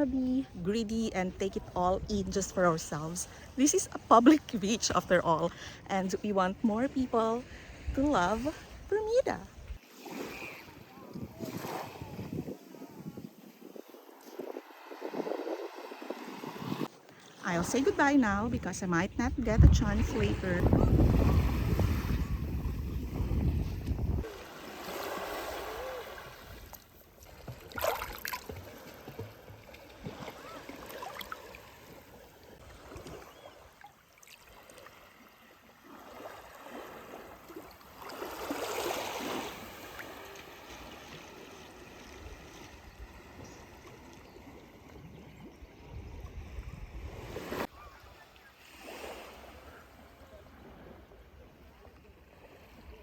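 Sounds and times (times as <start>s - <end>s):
small waves washing onto beach: 1.4s - 53.0s.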